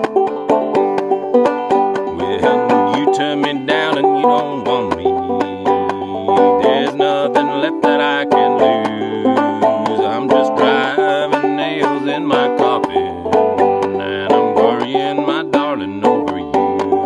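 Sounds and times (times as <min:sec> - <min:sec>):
banjo plucked notes: 0:00.0 - 0:17.0.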